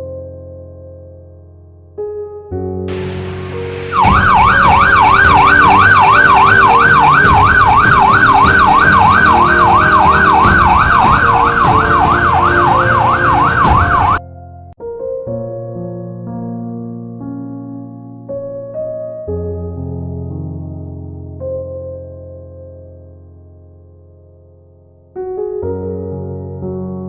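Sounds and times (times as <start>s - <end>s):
soft piano music: 0.0s - 27.0s
electronic siren yelping: 3.9s - 14.2s.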